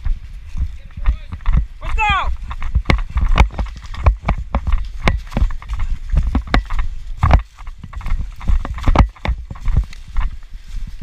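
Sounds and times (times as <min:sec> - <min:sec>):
running footsteps: 0:00.0 - 0:11.0.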